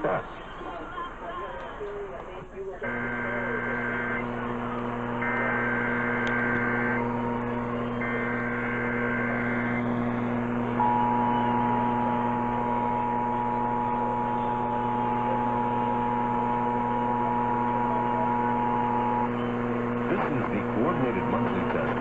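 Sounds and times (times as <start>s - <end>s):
steady electrical hum: 2.8s - 22.0s
two-tone attention signal: 10.8s - 16.0s.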